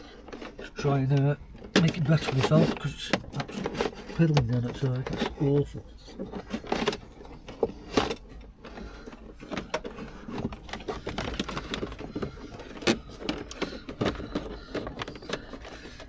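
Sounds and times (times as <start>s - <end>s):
cable scraping through plastic trim: 0.0s - 16.0s.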